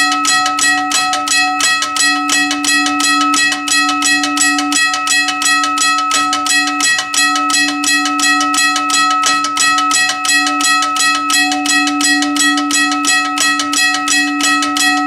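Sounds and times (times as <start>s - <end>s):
railroad crossing bell ringing: 0.0s - 15.0s.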